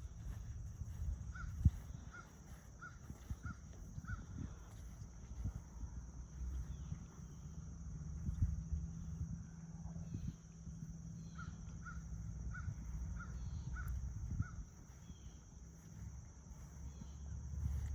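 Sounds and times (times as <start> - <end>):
bird calling: 0.0 - 5.0, 11.2 - 17.9
steady low rumble: 0.0 - 17.9.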